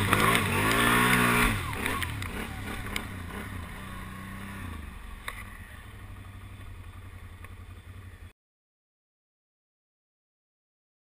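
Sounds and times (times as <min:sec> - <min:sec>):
atv engine running: 0:00.0 - 0:08.3.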